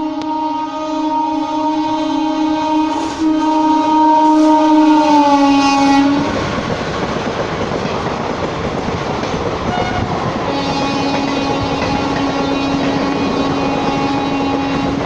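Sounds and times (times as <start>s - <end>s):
locomotive horn honking: 0.0s - 6.4s, 9.7s - 15.0s
train coaches clickety-clack: 0.0s - 15.0s.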